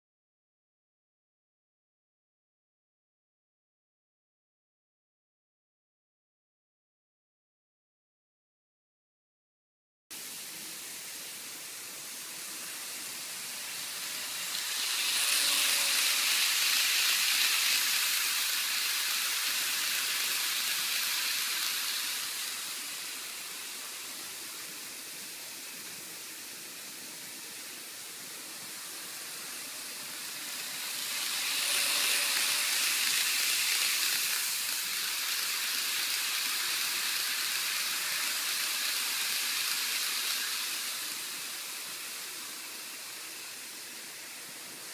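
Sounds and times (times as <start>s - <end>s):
model train wheels and motors hissing: 10.1s - 44.9s.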